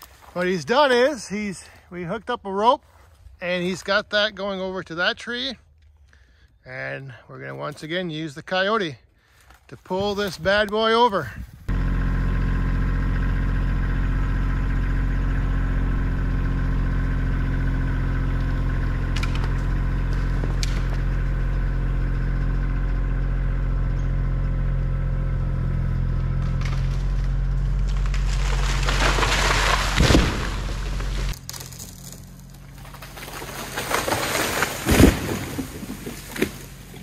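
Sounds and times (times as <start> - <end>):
tractor diesel engine running: 9.1 - 37.0
wood cracking and splintering: 13.1 - 37.0.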